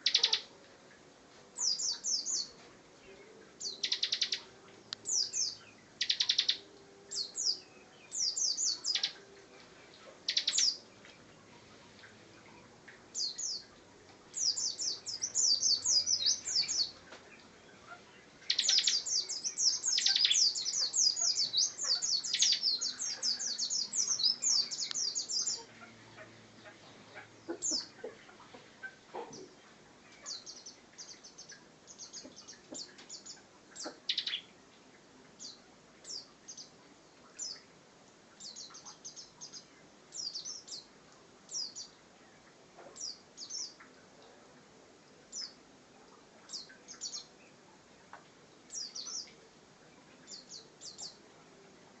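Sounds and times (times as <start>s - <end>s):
bird chirps: 0.0s - 0.5s, 1.6s - 9.2s, 10.0s - 13.7s, 14.3s - 34.6s
bird singing rapid chattering notes: 0.0s - 0.5s, 3.6s - 4.4s, 5.0s - 6.6s, 10.3s - 10.8s, 18.4s - 25.7s, 30.3s - 34.5s.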